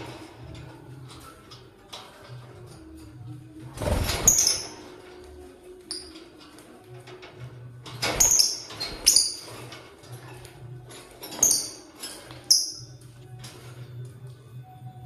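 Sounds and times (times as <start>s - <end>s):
birds chirping high-pitched: 3.9s - 5.0s, 8.0s - 13.3s.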